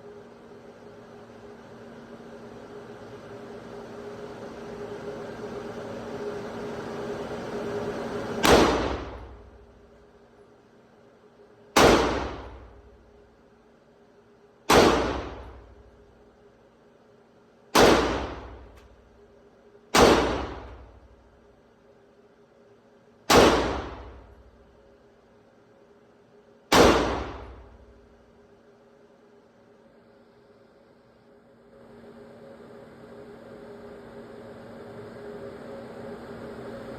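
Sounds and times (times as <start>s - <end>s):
gunshots: 8.4s - 9.5s, 11.8s - 12.8s, 14.7s - 15.7s, 17.8s - 18.8s, 20.0s - 20.9s, 23.3s - 24.3s, 26.7s - 27.8s.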